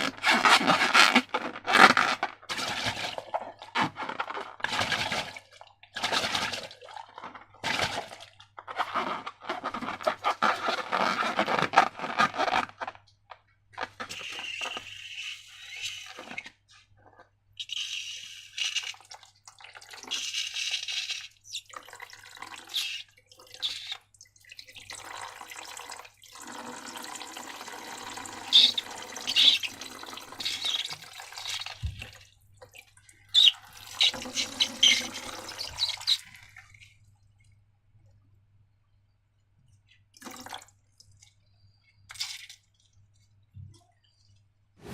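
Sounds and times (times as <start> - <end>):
liquid pouring and dripping: 2.2 - 9.8, 18.7 - 38.2, 39.6 - 44.5
wet slime squelching: 28.5 - 37.5.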